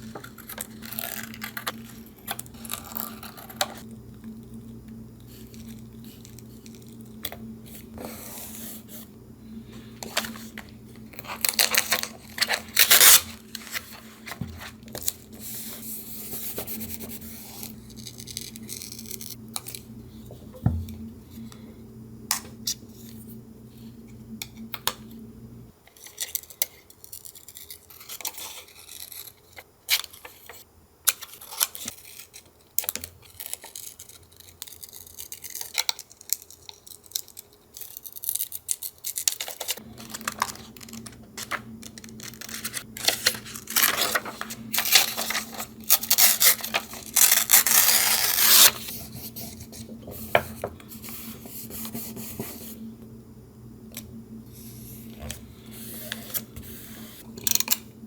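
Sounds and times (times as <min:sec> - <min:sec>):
low steady hum: 0:00.0 - 0:25.8, 0:39.8 - 0:58.0
paper rustling and tearing: 0:11.2 - 0:19.2, 0:38.2 - 0:49.7.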